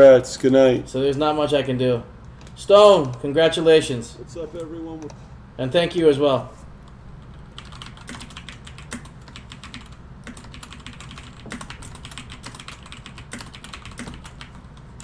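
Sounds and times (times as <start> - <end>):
keyboard typing clicks: 6.8 - 15.0.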